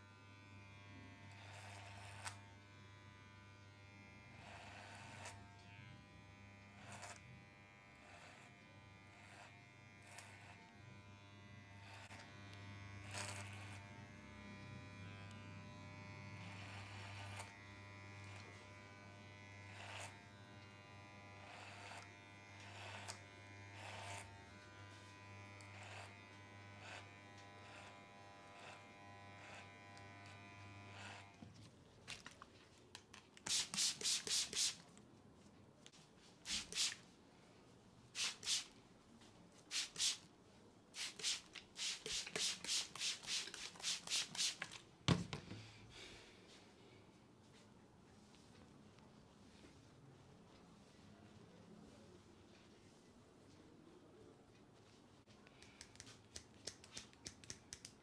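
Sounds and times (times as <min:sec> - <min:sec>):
electric hair trimmer buzzing: 0:00.0 - 0:31.4
trimmer cutting hair: 0:00.0 - 0:31.4, 0:39.7 - 0:40.2, 0:41.0 - 0:44.6.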